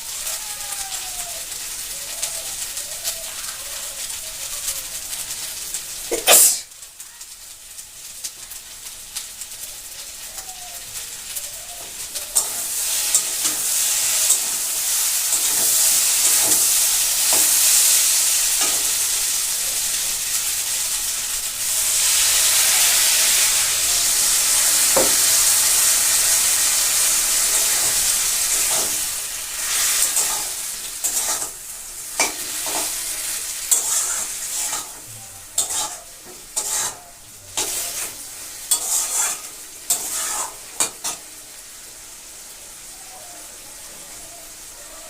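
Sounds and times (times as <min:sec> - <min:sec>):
food sizzling in a pan: 0:00.0 - 0:45.0
scrapes and clatters of stirring: 0:33.7 - 0:35.0, 0:35.6 - 0:41.2.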